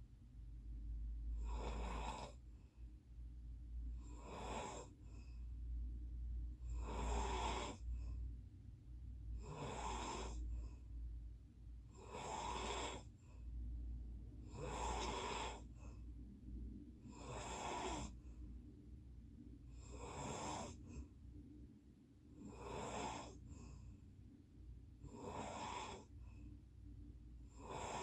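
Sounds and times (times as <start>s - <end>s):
low steady hum: 0.0s - 22.5s, 23.3s - 25.2s, 25.9s - 27.7s
faint breaths: 0.8s - 28.0s
person snoring: 1.4s - 2.4s, 6.8s - 7.8s, 9.4s - 10.4s, 12.0s - 13.1s, 14.5s - 15.7s, 17.2s - 18.2s, 19.9s - 20.8s, 22.5s - 23.4s, 25.1s - 26.1s, 27.6s - 28.0s.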